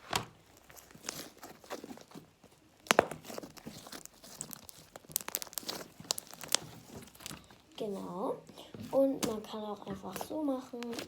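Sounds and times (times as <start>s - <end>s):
crunchy slime crackling: 0.0s - 11.0s.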